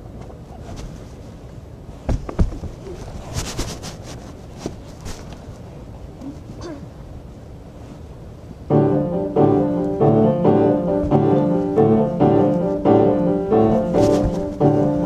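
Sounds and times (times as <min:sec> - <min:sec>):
faint rustling: 0:00.2 - 0:06.8, 0:10.9 - 0:15.0
piano chords: 0:08.7 - 0:15.0.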